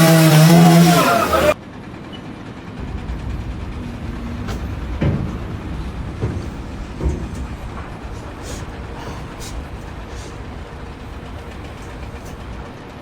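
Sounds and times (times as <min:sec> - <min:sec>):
dull knocks: 0:02.8 - 0:12.8
low mechanical rumble: 0:02.8 - 0:12.9.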